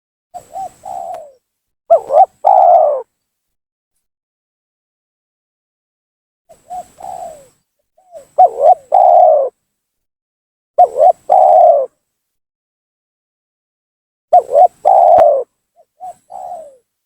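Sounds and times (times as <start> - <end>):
dove cooing: 0.4 - 3.1, 6.5 - 9.6, 10.8 - 12.0, 14.3 - 16.9.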